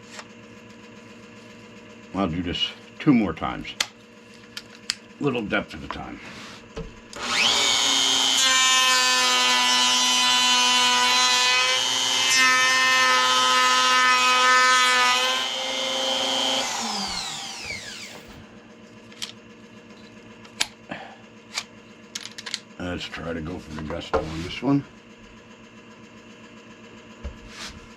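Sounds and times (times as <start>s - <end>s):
router spinning down whine: 7.1s - 18.8s
palm router running: 15.2s - 22.0s.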